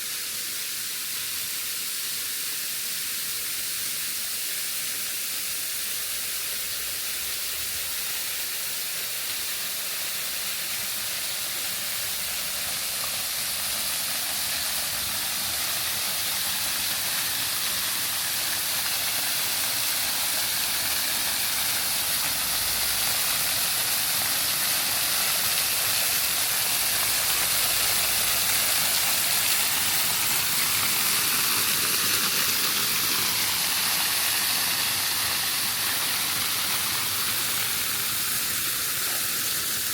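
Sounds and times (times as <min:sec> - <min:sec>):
waterfall rushing: 0:10.6 - 0:39.9.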